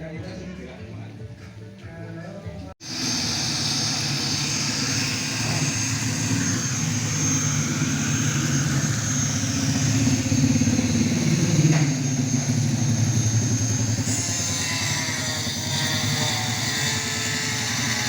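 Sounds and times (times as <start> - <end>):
high whine: 2.8 - 17.1
engine humming: 2.9 - 14.9.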